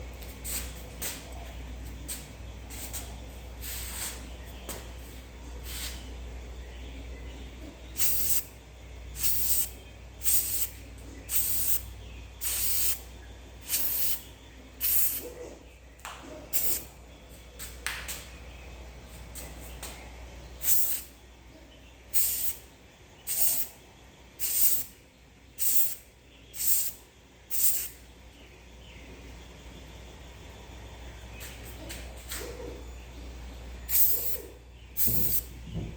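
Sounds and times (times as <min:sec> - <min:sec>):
spray paint can hissing: 0:08.0 - 0:08.5, 0:09.2 - 0:11.8, 0:12.4 - 0:13.0, 0:13.6 - 0:14.2, 0:14.8 - 0:15.2, 0:16.6 - 0:16.8, 0:20.6 - 0:21.1, 0:22.2 - 0:22.6, 0:23.3 - 0:23.7, 0:24.4 - 0:24.9, 0:25.6 - 0:26.0, 0:26.6 - 0:28.0, 0:33.9 - 0:34.4, 0:35.0 - 0:35.5.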